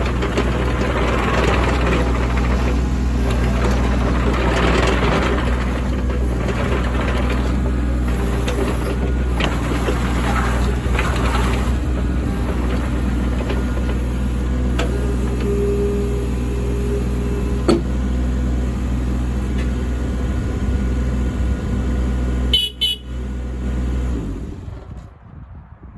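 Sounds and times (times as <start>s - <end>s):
excavator diesel engine running: 0.0s - 25.0s
brief high beep: 22.6s - 23.1s.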